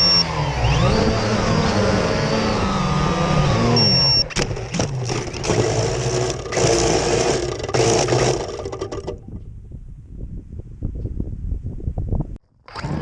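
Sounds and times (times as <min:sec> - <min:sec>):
drone propellers whirring: 0:00.0 - 0:09.2
wind on microphone: 0:08.9 - 0:12.4.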